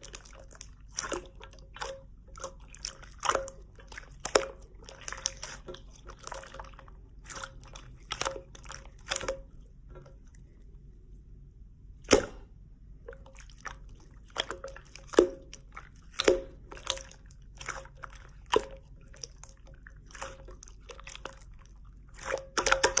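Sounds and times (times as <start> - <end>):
slime squeezed with wet clicks: 22.2 - 23.0.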